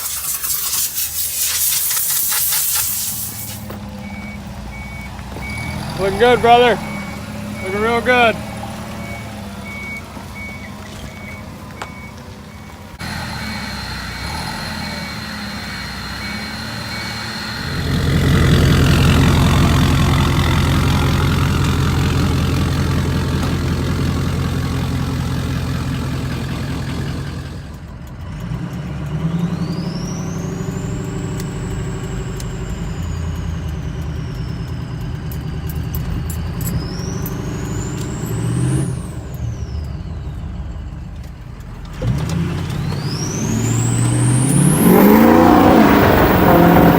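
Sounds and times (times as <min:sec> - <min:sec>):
truck engine running: 0:00.0 - 0:46.9
high rising whistle: 0:13.0 - 0:22.2, 0:42.8 - 0:46.9.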